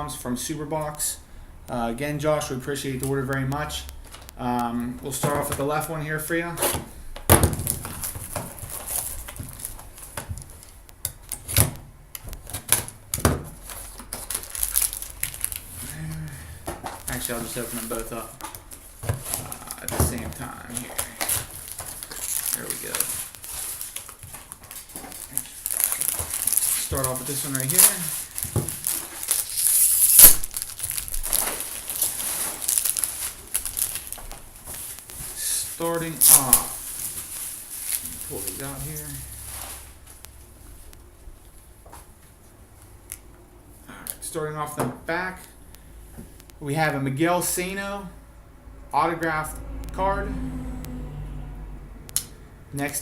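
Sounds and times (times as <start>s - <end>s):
plastic wrapping crinkling and tearing: 7.4s - 41.5s
card boxes knocking and clicking: 18.3s - 22.0s.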